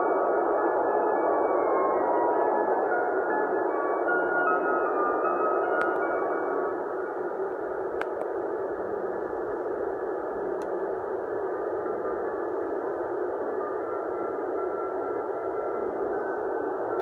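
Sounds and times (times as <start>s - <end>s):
steady hiss from toy speaker: 5.8s - 17.0s.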